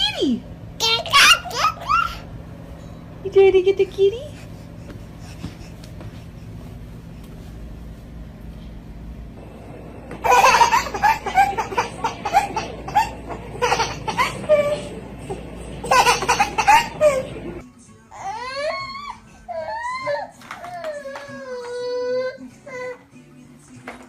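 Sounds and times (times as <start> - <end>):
low steady hum: 0.0 - 18.0
baby laughing: 0.8 - 2.3, 10.2 - 17.6.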